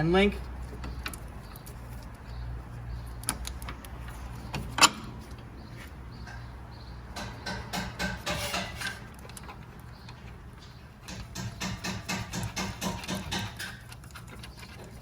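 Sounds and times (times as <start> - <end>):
knocks: 7.2 - 9.0, 11.1 - 13.8.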